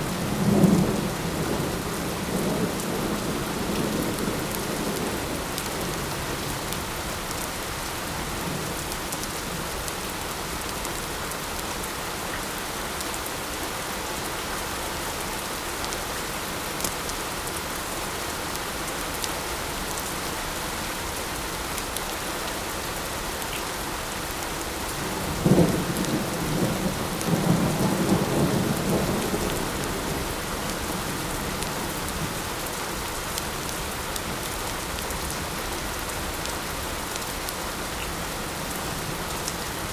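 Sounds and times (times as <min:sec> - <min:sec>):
light rain falling: 0:00.0 - 0:39.9
thunder crack and rumble: 0:25.0 - 0:32.4.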